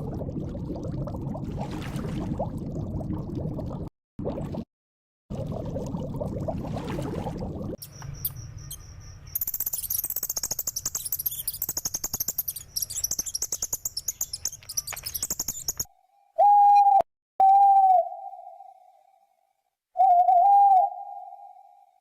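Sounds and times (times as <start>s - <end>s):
birds twittering: 7.8s - 15.9s
long steady bird calls: 7.8s - 16.8s.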